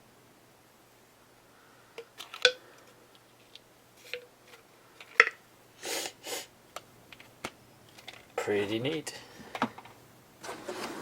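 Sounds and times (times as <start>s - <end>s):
plastic balls clicking and knocking: 2.0s - 5.4s, 6.7s - 10.0s.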